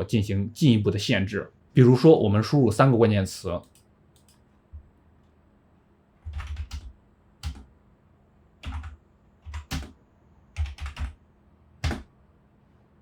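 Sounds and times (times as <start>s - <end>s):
typing on computer keyboard: 6.2s - 7.7s, 8.6s - 10.0s, 10.6s - 11.2s, 11.8s - 12.1s.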